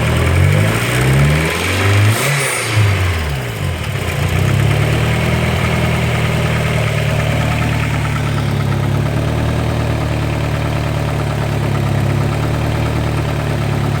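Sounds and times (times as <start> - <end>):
car engine idling: 0.0 - 1.5, 2.8 - 14.0
fast even engine ticking: 3.7 - 14.0.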